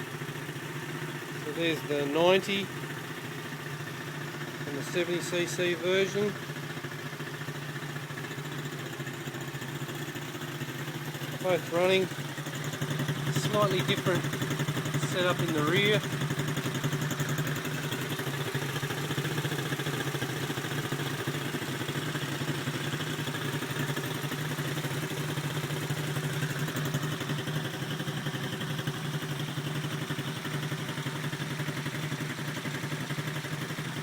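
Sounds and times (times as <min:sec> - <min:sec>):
small motorbike engines idling: 0:00.0 - 0:34.0.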